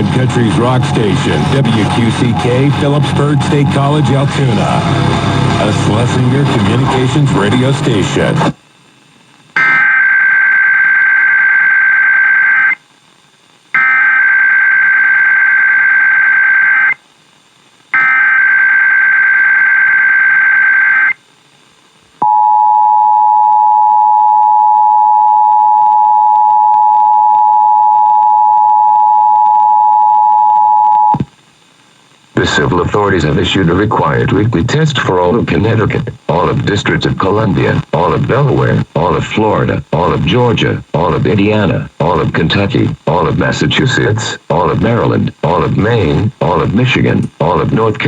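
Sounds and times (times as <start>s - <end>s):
data burst tones: 13.8s - 17.0s.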